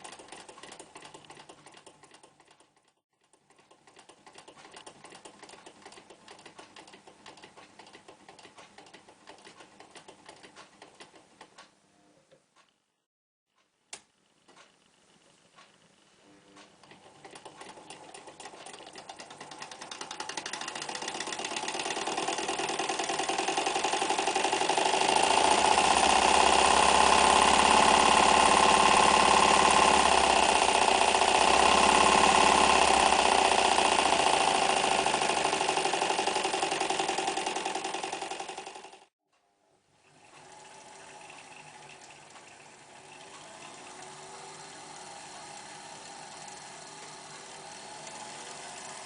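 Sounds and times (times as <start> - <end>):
electric sewing machine running: 16.8 - 39.1, 40.1 - 49.0.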